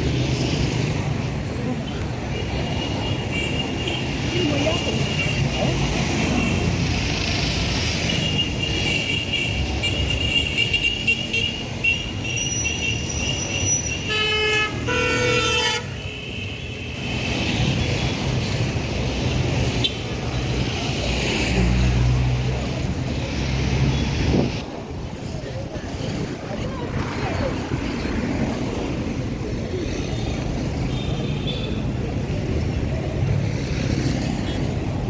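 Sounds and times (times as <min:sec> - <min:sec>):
vehicle engines and road noise: 0:00.0 - 0:35.0
car horns honking: 0:08.1 - 0:17.0.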